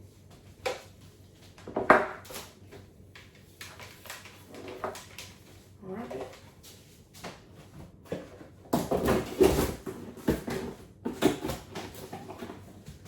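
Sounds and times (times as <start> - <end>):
kitchen things knocking and clattering: 8.1 - 12.7.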